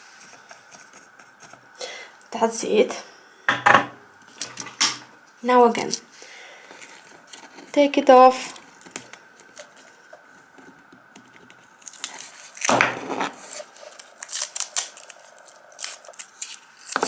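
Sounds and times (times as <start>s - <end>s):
rustling scraping and tearing: 6.7s - 7.8s, 8.6s - 17.0s.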